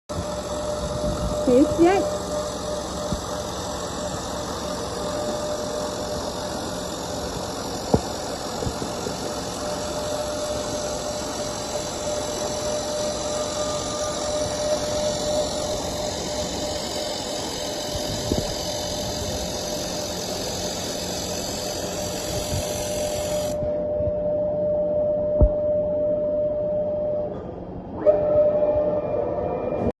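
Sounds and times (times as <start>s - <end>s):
welding machine humming: 0.0s - 23.8s
machine whine: 0.0s - 30.0s
high hiss: 0.9s - 23.6s.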